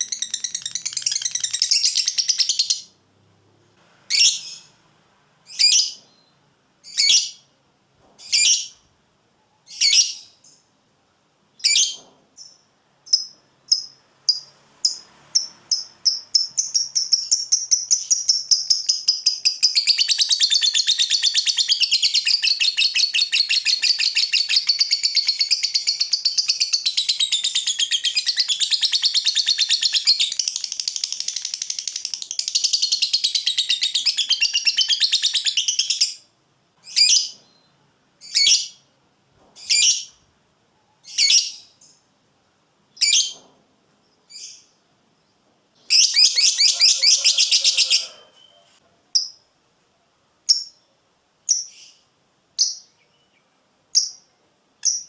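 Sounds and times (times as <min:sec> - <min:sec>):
lovebird chattering: 0:00.0 - 0:02.9, 0:45.9 - 0:49.3.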